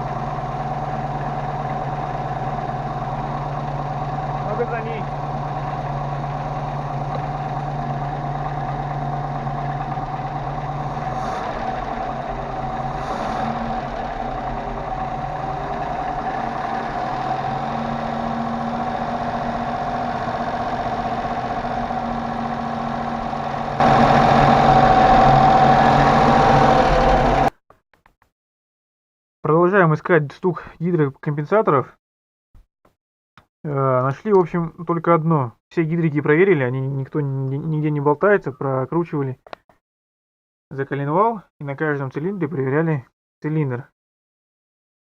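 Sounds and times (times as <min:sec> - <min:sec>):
car engine idling: 0:00.0 - 0:27.5.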